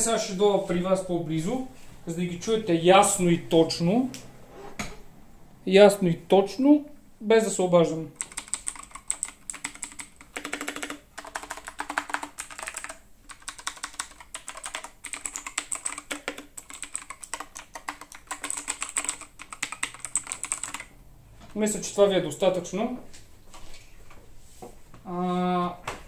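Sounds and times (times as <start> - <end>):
mechanical keyboard typing: 8.2 - 20.9.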